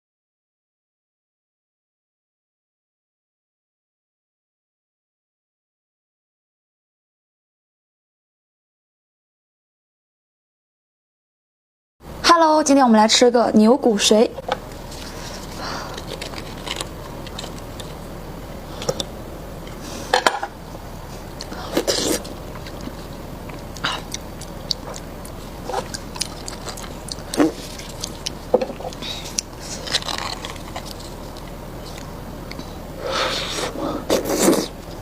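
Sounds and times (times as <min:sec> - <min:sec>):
chewing and mouth smacks: 0:14.7 - 0:18.1, 0:21.2 - 0:32.8.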